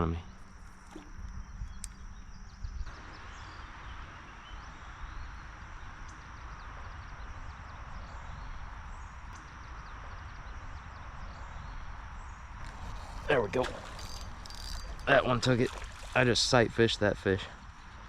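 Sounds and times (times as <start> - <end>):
wind rumble on microphone: 0.0 - 18.0
insect buzzing: 11.6 - 16.2.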